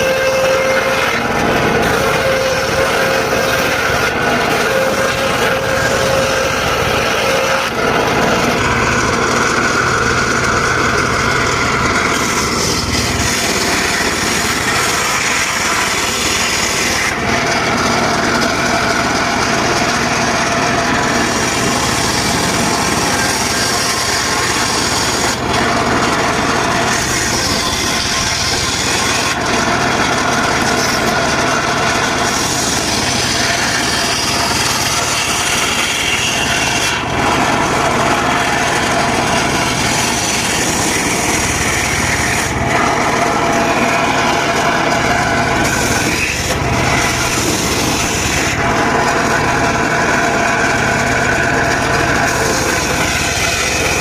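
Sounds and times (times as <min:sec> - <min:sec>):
engine drone: 0:00.0 - 0:54.0
saw blade cutting wood: 0:00.0 - 0:54.0.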